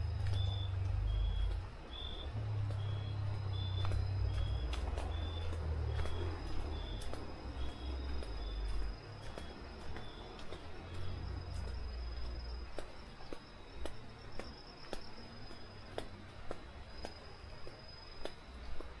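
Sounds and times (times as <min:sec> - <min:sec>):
insects calling high-pitched tone: 0:00.0 - 0:12.6.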